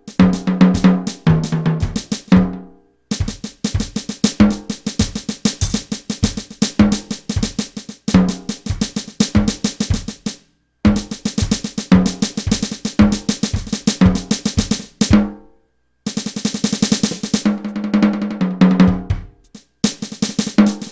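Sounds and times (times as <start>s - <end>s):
electronic drum groove: 0.0s - 15.3s, 16.1s - 20.9s.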